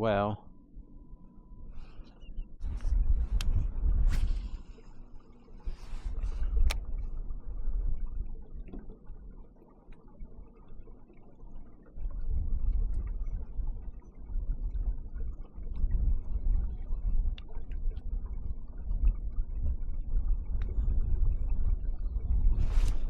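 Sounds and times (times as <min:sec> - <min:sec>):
wind buffeting microphone: 0:01.7 - 0:09.4, 0:11.9 - 0:23.0
faint small ticks: 0:06.3 - 0:07.0, 0:17.2 - 0:18.1.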